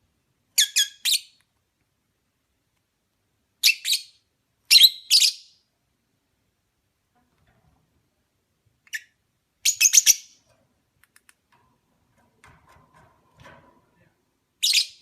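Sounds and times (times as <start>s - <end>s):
bird chirping: 3.6s - 5.6s, 8.8s - 10.5s, 14.6s - 15.0s.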